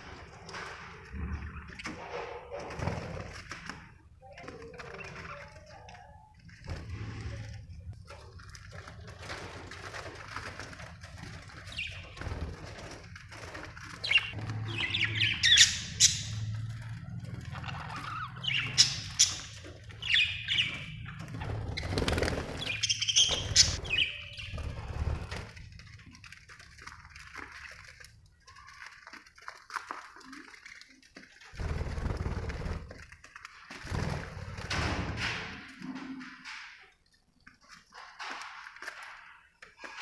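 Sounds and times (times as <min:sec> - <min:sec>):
budgerigars chirping: 0:14.0 - 0:16.5, 0:17.6 - 0:21.0, 0:22.6 - 0:24.7
wing flapping: 0:21.2 - 0:35.3.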